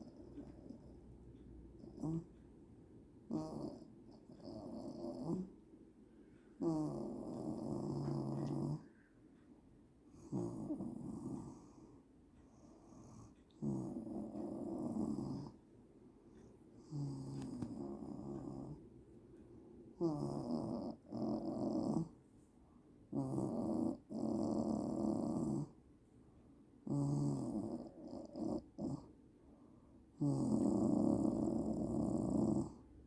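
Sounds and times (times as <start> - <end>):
quiet breathing: 0.0 - 33.0
woman snoring: 2.0 - 2.3, 3.3 - 5.5, 6.6 - 8.9, 10.2 - 11.8, 13.2 - 15.6, 16.9 - 18.8, 20.0 - 22.1, 23.1 - 25.7, 26.9 - 29.0, 30.2 - 32.8.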